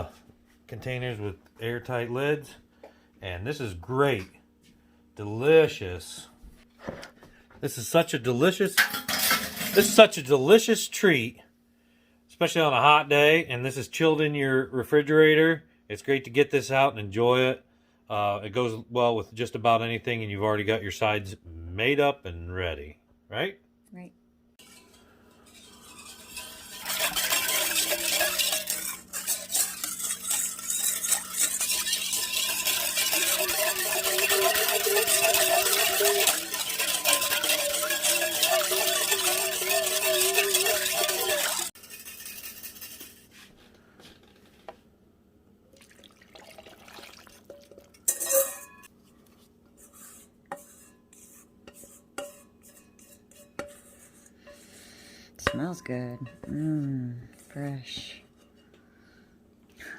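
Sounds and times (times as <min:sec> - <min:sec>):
utensil clatter: 0:08.8 - 0:10.1, 0:24.6 - 0:43.3, 0:46.8 - 0:48.9
utensil clinking against container: 0:08.8 - 0:10.1, 0:24.6 - 0:43.1, 0:46.3 - 0:48.9
spoon scraping a bowl: 0:08.9 - 0:10.1, 0:24.6 - 0:43.6, 0:47.5 - 0:55.5.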